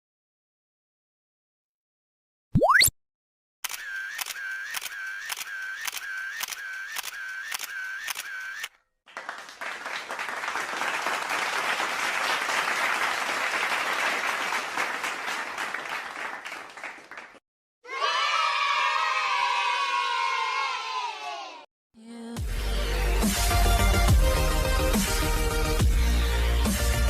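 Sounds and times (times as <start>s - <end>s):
sharp mechanical clicks with whirring: 3.6s - 8.7s
crowd applauding: 9.1s - 17.4s.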